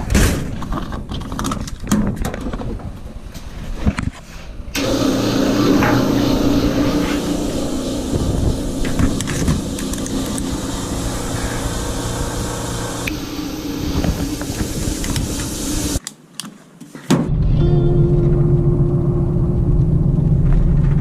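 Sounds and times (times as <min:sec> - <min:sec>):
machine running with a hiss: 0:04.8 - 0:16.0.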